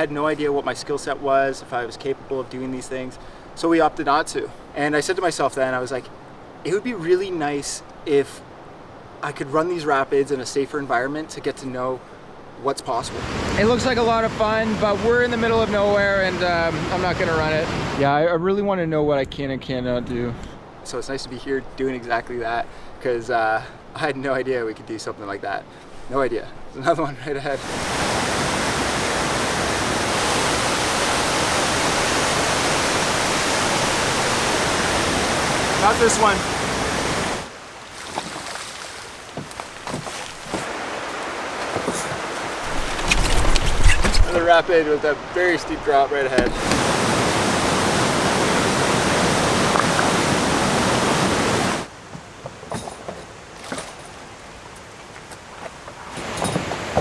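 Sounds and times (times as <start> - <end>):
whitewater rushing: 9.2 - 18.0, 20.8 - 51.9
small splashes: 37.4 - 45.4.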